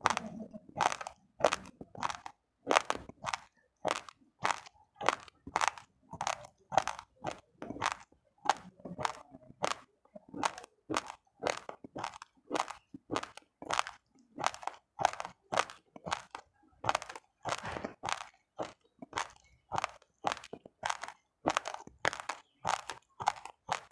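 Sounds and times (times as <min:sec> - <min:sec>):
rice grains crunched between teeth: 0:00.8 - 0:08.0.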